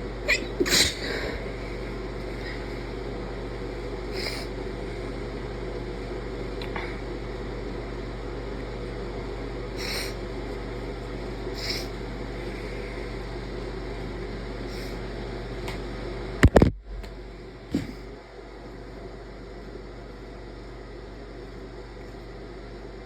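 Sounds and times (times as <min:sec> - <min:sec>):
steady hum: 0:00.0 - 0:23.0
person sneezing: 0:00.3 - 0:01.4.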